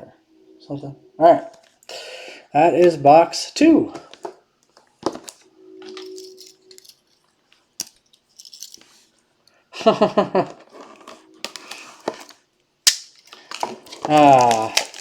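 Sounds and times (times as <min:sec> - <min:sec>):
packaging crinkling and rustling: 0:10.6 - 0:12.4, 0:13.1 - 0:15.0
packaging clicks and taps: 0:13.2 - 0:15.0.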